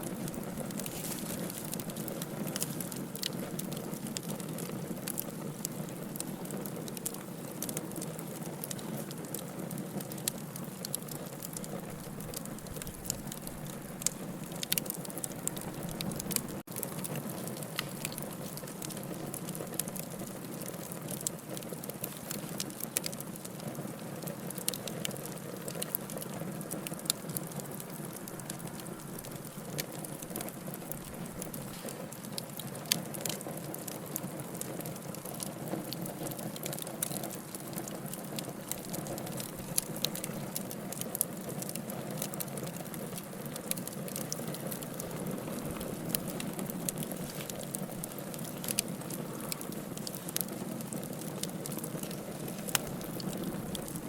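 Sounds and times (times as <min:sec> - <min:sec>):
campfire crackling and popping: 0:00.0 - 0:54.0.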